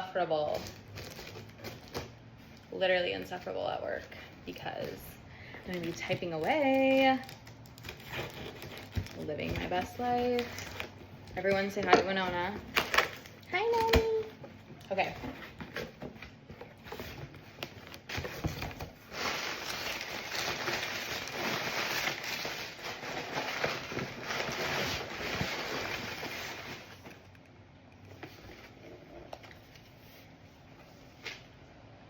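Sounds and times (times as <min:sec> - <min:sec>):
packaging rustling: 0:05.6 - 0:27.4.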